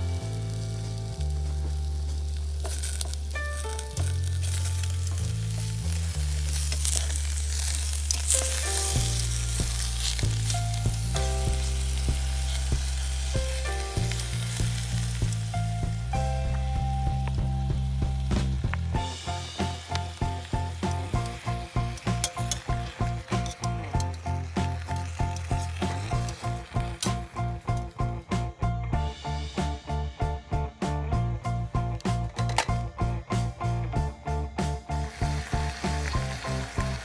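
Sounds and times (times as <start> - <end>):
small clicks and crackles: 0.0 - 15.9, 18.2 - 28.0, 35.0 - 37.0
music with held bass notes: 0.0 - 37.0
food sizzling in a pan: 2.1 - 15.7, 19.2 - 27.4, 35.0 - 37.0.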